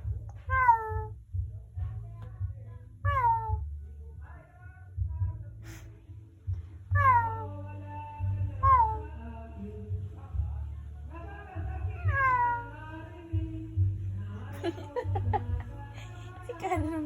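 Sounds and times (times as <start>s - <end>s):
steady low hum: 0.0s - 17.0s
cat meowing: 0.4s - 1.1s, 3.1s - 3.6s, 6.9s - 7.5s, 12.1s - 12.9s.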